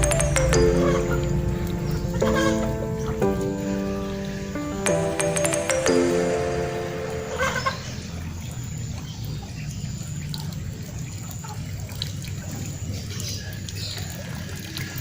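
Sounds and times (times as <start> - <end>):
background music: 0.0 - 8.2
small river trickling: 0.0 - 15.0.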